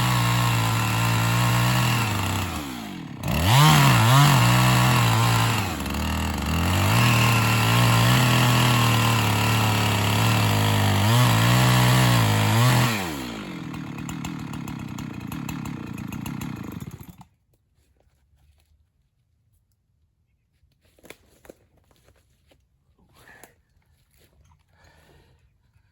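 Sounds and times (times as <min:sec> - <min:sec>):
chainsaw cutting: 0:00.0 - 0:17.3
faint cracks and rustles: 0:20.5 - 0:24.8.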